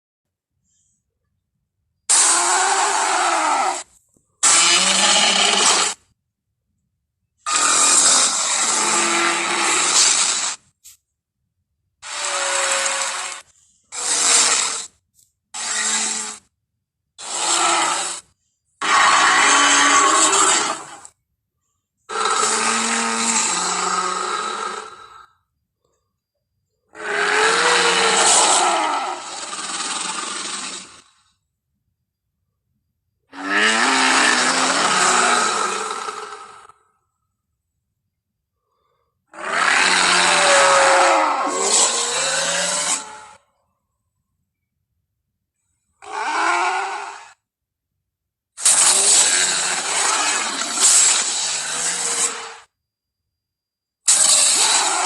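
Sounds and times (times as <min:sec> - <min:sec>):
harsh rasping creature roars: 0:02.1 - 0:06.0, 0:07.5 - 0:10.6, 0:12.0 - 0:14.9, 0:15.6 - 0:16.5, 0:17.2 - 0:21.2, 0:22.1 - 0:25.3, 0:26.9 - 0:31.3, 0:33.3 - 0:36.8, 0:39.3 - 0:43.4, 0:46.0 - 0:47.4, 0:48.6 - 0:52.7, 0:54.1 - 0:55.0.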